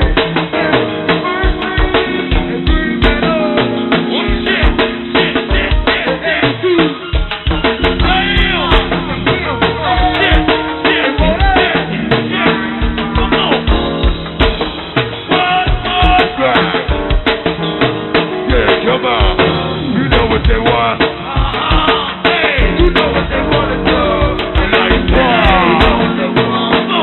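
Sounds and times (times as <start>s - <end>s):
person singing: 0.0s - 13.9s, 15.3s - 17.2s, 18.5s - 27.0s
drum kit and percussion beat: 0.0s - 27.0s
live band music: 0.0s - 27.0s.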